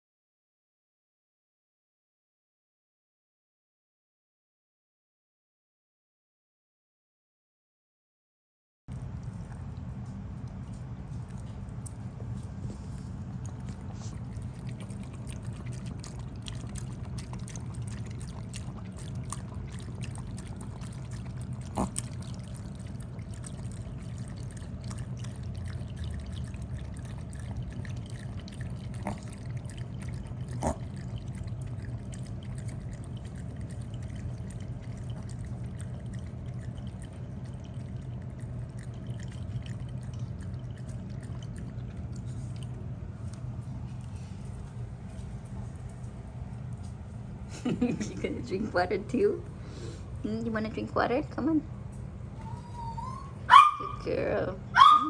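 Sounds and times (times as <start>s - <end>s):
low even hum: 8.9s - 55.0s
water trickling: 13.5s - 42.8s.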